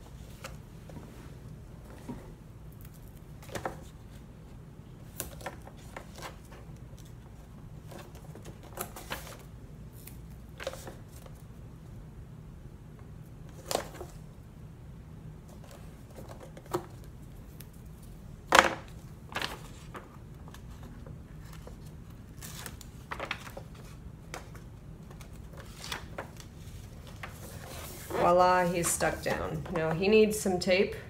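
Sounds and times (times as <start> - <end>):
low steady hum: 0.0 - 31.0
paper envelopes tapping and rustling: 10.6 - 11.4, 18.5 - 29.9.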